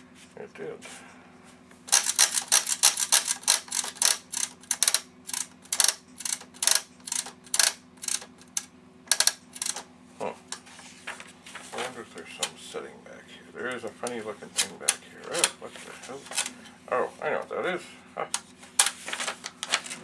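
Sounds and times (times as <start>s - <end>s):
manual typewriter clacking: 1.9s - 9.9s, 13.8s - 15.6s, 16.2s - 16.6s, 18.3s - 20.0s.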